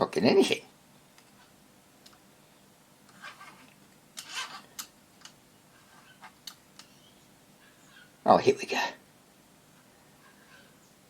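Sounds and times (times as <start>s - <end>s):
small clicks and taps: 4.2s - 5.4s.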